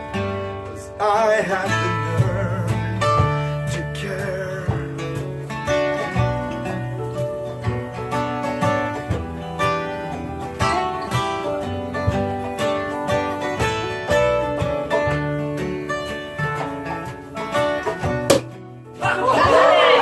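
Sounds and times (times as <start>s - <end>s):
acoustic guitar strummed chords: 0.0s - 20.0s.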